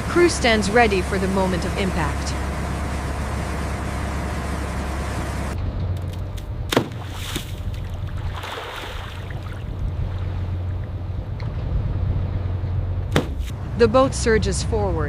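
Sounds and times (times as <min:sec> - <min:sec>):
water washing: 0:00.0 - 0:12.6
boat engine humming: 0:00.0 - 0:15.0
sharp knock: 0:13.1 - 0:13.5.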